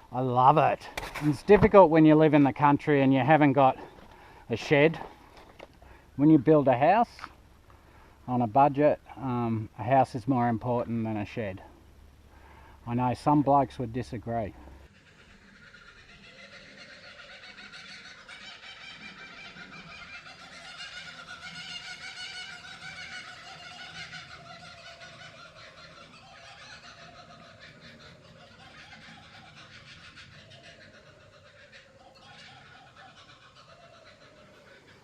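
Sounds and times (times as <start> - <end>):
bird-like animal chatter: 0.0 - 5.2, 12.9 - 35.0.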